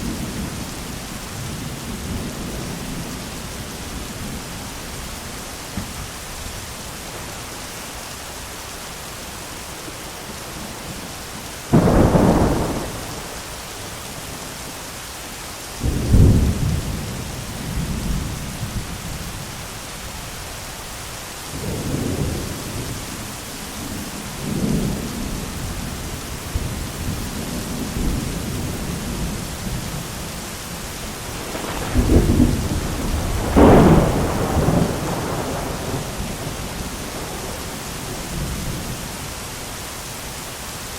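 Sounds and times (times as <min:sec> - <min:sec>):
steady rain: 0:00.0 - 0:40.9
thunder claps and rumbles: 0:11.7 - 0:13.5, 0:15.8 - 0:19.2, 0:31.2 - 0:39.1.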